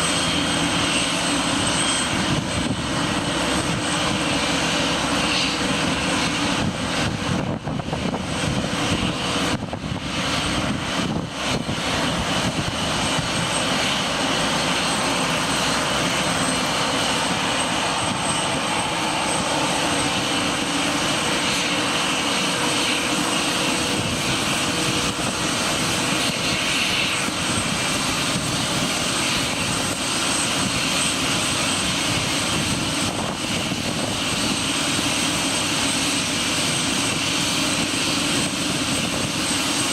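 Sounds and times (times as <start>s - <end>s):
jet engines rushing with high whine: 0.0s - 39.9s.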